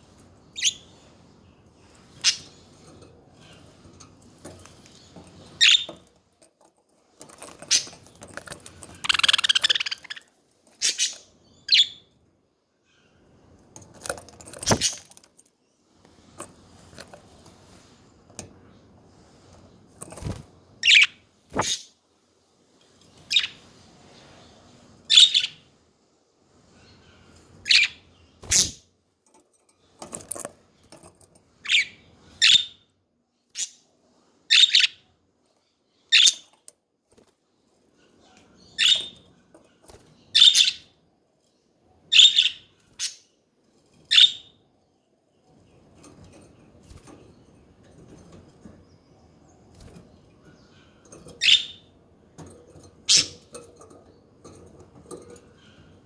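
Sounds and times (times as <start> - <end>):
budgerigars chirping: 9.0 - 12.0, 20.8 - 21.8, 34.5 - 35.0, 40.4 - 40.9, 42.1 - 43.2, 51.4 - 51.8.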